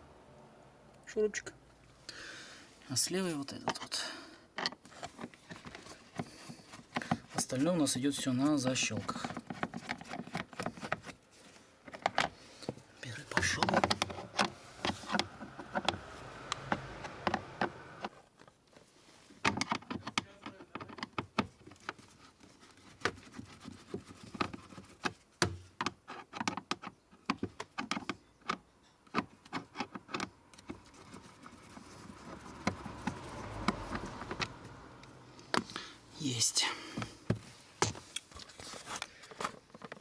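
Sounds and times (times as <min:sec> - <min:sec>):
screwdriver clicking and scraping: 0:08.3 - 0:11.2.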